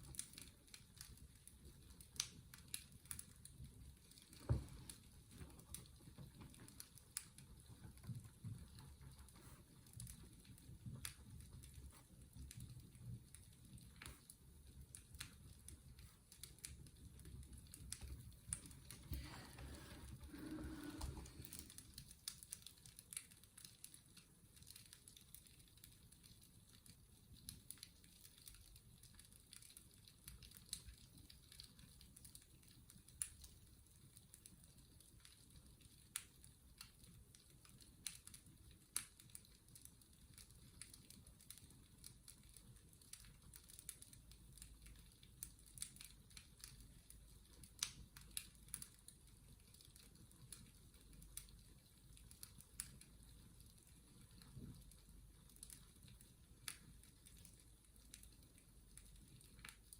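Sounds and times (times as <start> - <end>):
fireplace crackling: 0.0 - 59.9.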